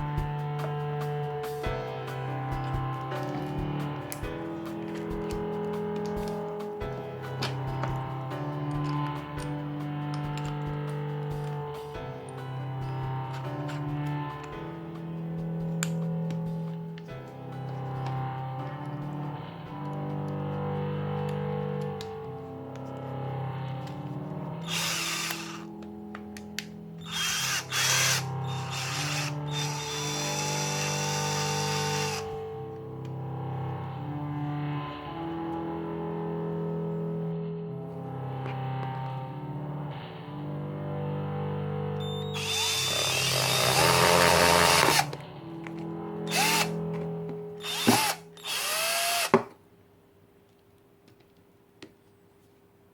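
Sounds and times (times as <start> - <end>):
background music: 0.0 - 49.4
cordless hammer drill running: 24.6 - 25.7, 27.0 - 32.4, 42.0 - 45.2, 46.3 - 49.5.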